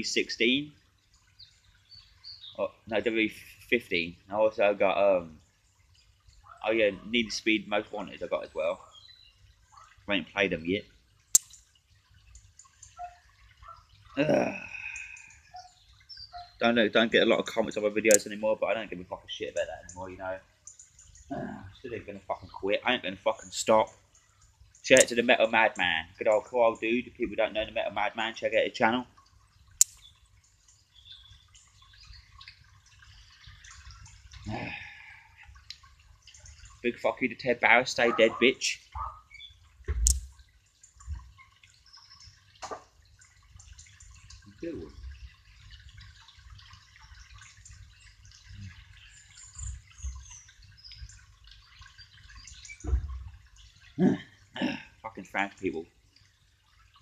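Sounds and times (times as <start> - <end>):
light rain pattering and dripping: 0.0 - 57.0
brief vocal sounds: 14.2 - 15.3, 21.3 - 21.8, 54.0 - 54.9
soft low thump: 39.9 - 40.2, 52.8 - 53.3.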